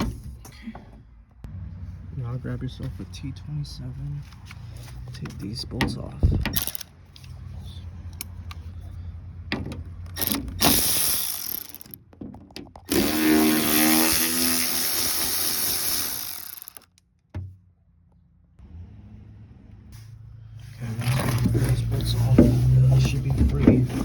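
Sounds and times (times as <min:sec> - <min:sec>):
power driver motor whine: 0:12.9 - 0:16.8.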